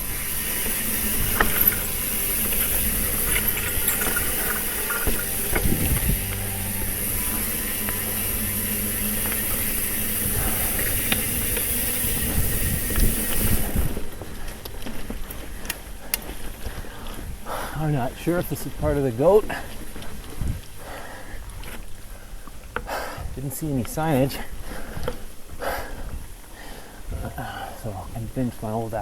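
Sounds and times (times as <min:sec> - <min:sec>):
bike knocks and rattles: 0:00.0 - 0:06.5, 0:07.2 - 0:17.1.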